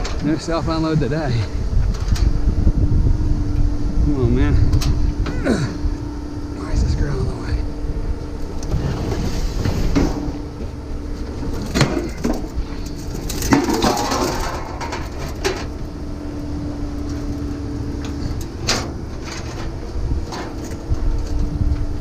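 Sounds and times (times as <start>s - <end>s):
steady low hum: 0.0s - 22.0s
scrap metal clanking and clattering: 8.7s - 10.4s, 11.3s - 15.8s, 18.0s - 20.8s.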